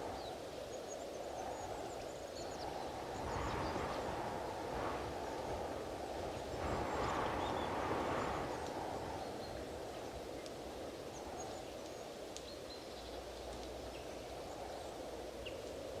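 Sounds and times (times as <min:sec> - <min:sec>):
strong gusting wind: 0:00.0 - 0:11.8.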